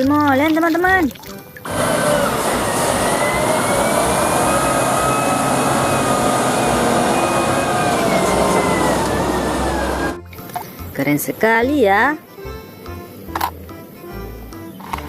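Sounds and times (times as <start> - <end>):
heavy truck engine running: 1.7 - 10.2.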